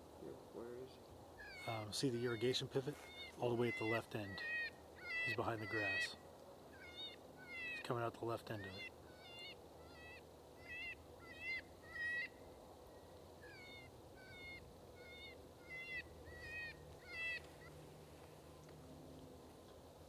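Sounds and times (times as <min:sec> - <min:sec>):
squeaky bird-like calls: 0:01.4 - 0:06.2.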